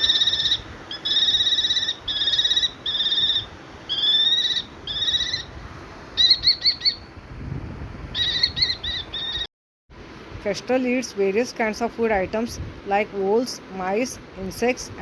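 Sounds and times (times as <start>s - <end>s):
kestrel trilled calls: 0.0s - 5.5s, 6.2s - 7.1s, 8.2s - 9.5s.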